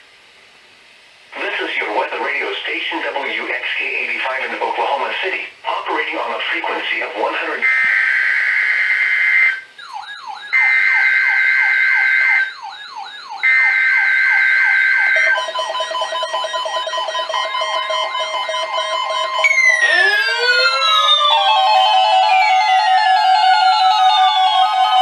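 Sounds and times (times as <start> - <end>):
siren-like sweeping tone: 7.6 - 25.0
shrill digital data screech: 8.6 - 24.9
electronic alert tones: 9.8 - 24.7.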